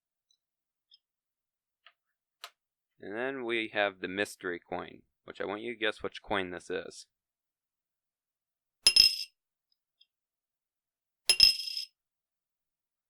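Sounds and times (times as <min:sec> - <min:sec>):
coin clattering on a bowl: 0:08.9 - 0:09.3, 0:11.3 - 0:11.9.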